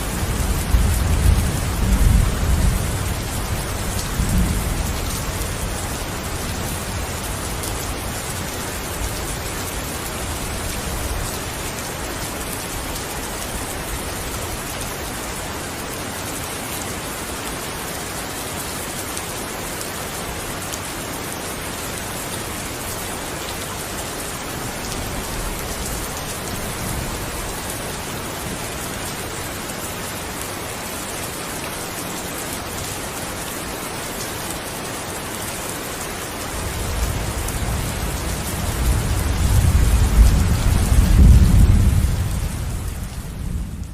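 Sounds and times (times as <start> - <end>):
dense rain hissing: 0.0 - 43.9
distant thunder rumble: 36.8 - 43.9.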